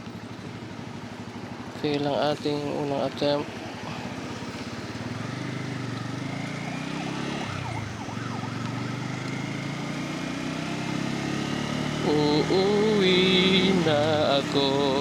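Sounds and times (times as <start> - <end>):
motorcycle engine idling: 0.0 - 6.3.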